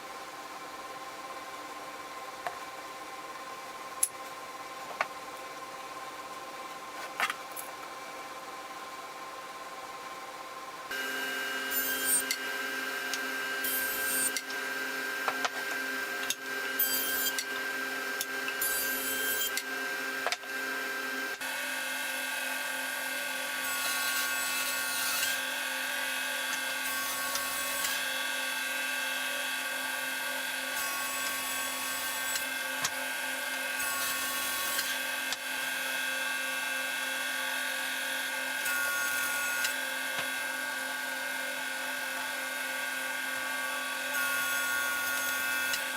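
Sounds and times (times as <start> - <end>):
router motor whine: 10.9 - 45.9.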